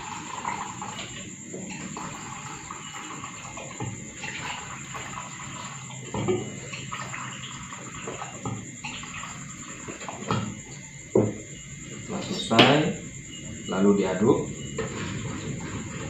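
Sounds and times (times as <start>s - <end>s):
water pouring into a glass: 0.0s - 10.5s.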